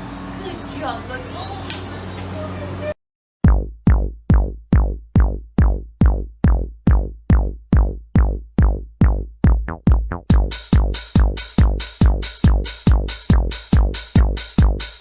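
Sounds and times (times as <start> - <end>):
deep kick drum thumping: 3.4 - 15.0
electronic dance music: 9.5 - 15.0
hissing hi-hats and cymbals: 10.3 - 15.0.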